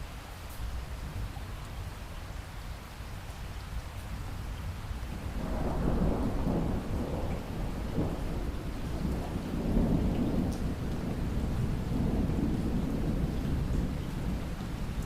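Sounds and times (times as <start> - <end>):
steady rain: 0.0 - 15.0
rolling thunder: 5.1 - 15.0.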